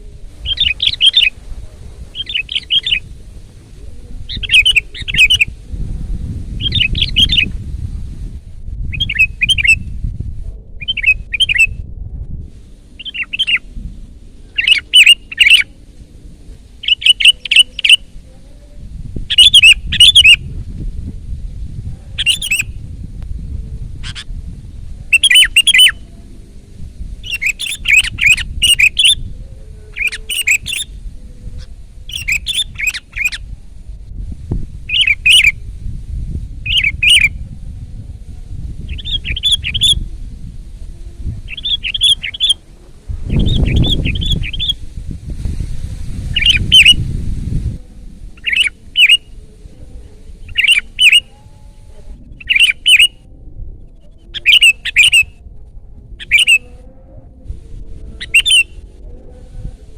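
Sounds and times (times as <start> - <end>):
low rumbling noise: 0.0 - 59.9
bird singing chirpy phrases: 0.4 - 1.3, 2.2 - 3.1, 4.3 - 5.5, 10.8 - 11.7, 13.0 - 13.7, 14.5 - 15.7, 16.8 - 18.1, 19.3 - 20.4, 22.2 - 22.7, 25.1 - 26.0, 27.2 - 29.3, 29.9 - 31.0, 32.1 - 33.4, 38.9 - 40.0, 41.5 - 42.6, 48.4 - 49.3, 50.4 - 51.4, 52.3 - 53.2, 53.9 - 55.3, 56.2 - 56.7, 58.2 - 58.7.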